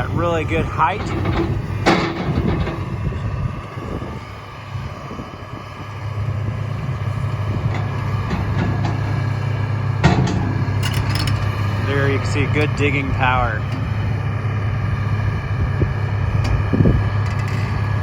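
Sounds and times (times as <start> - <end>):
excavator diesel engine: 0.0 - 18.0
sharp metal clank: 7.7 - 11.9.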